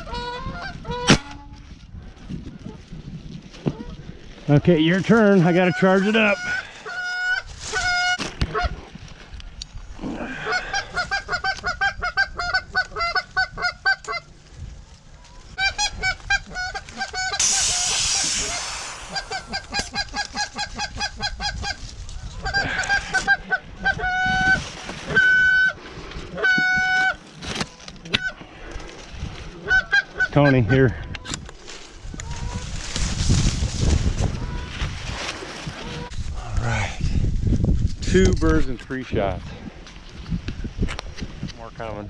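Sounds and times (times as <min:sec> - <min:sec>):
geese honking and clucking: 0:00.0 - 0:01.6, 0:04.8 - 0:08.8, 0:10.2 - 0:14.3, 0:15.2 - 0:28.7, 0:29.4 - 0:31.4, 0:32.1 - 0:32.8, 0:34.2 - 0:36.1
short hiss: 0:17.4 - 0:19.7.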